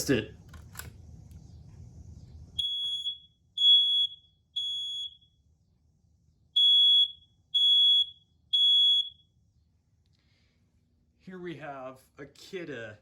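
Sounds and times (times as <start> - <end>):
smoke alarm high-pitched beeps: 2.6 - 5.4, 6.6 - 9.3.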